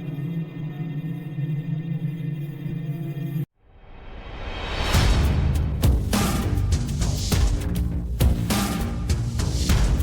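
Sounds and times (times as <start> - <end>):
dramatic soundtrack music: 3.7 - 10.0.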